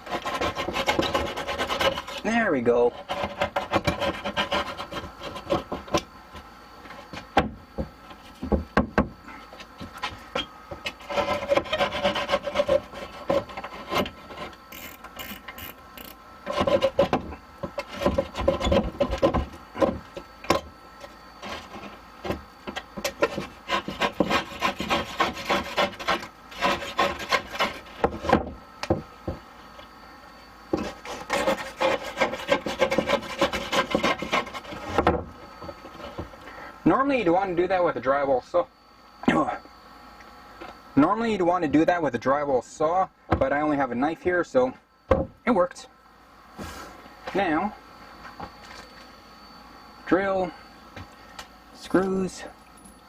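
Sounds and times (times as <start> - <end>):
knife sawing through board: 0.0 - 6.0, 10.9 - 14.9, 16.4 - 17.2, 17.8 - 19.4, 23.1 - 28.4, 30.8 - 35.0.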